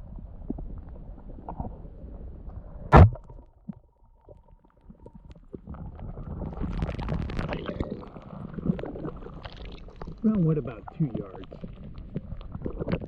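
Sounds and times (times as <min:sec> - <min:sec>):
underwater pistol shot: 0:02.9 - 0:03.4.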